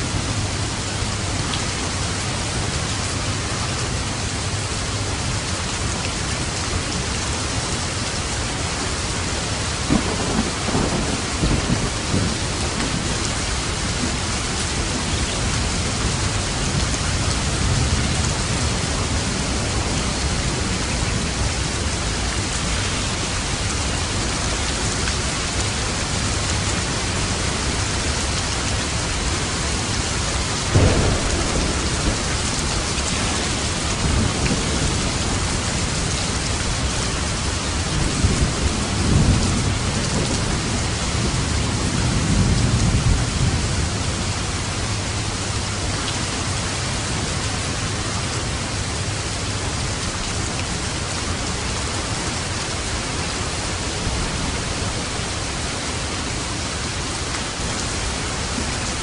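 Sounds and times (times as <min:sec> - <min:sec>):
heavy rain: 0:00.0 - 0:59.0
thunder rumbling: 0:09.7 - 0:24.3, 0:28.9 - 0:45.2.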